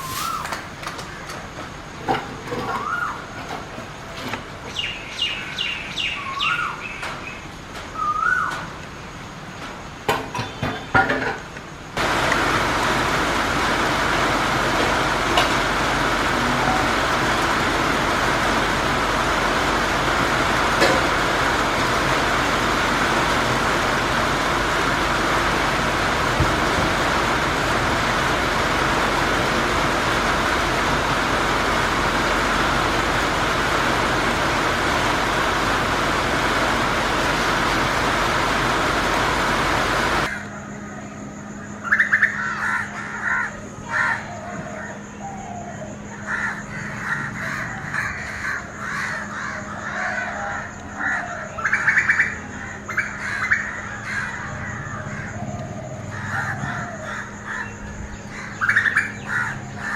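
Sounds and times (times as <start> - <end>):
steady low hum: 11.6 - 59.9
heavy rain: 12.0 - 40.3.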